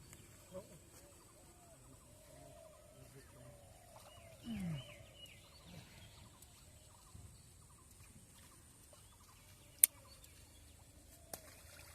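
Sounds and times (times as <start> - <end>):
faint birds chirping: 0.0 - 11.9.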